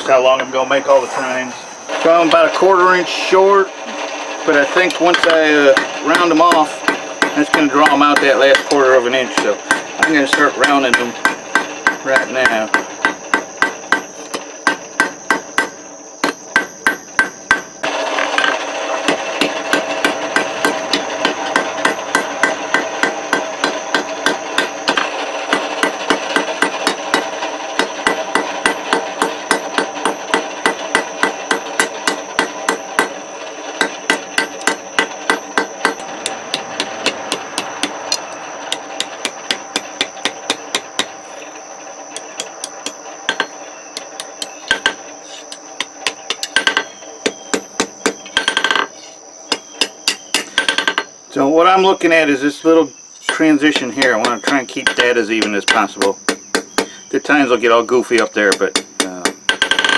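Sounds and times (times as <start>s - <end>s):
hammer striking steel on anvil: 9.4s - 17.7s, 19.1s - 33.2s, 33.8s - 41.1s, 42.2s - 48.9s, 53.3s - 57.0s, 58.2s - 59.9s
anvil ringing: 33.8s - 41.3s, 53.3s - 57.0s.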